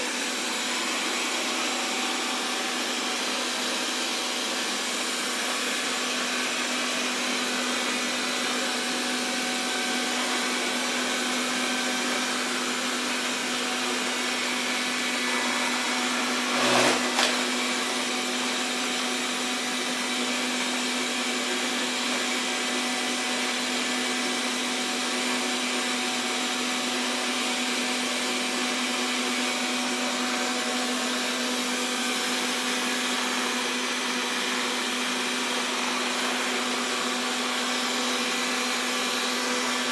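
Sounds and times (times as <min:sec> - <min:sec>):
robot vacuum whirring: 0:14.5 - 0:17.6.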